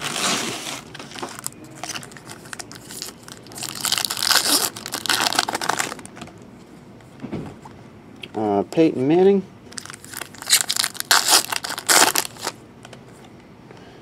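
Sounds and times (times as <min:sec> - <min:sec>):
crinkling plastic wrappers: 0:00.0 - 0:06.1, 0:09.7 - 0:12.6.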